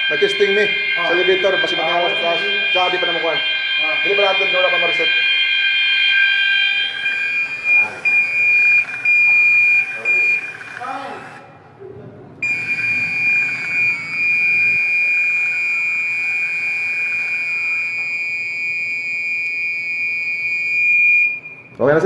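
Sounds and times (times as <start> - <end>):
fire alarm tone: 0.0 - 11.4, 12.4 - 22.0.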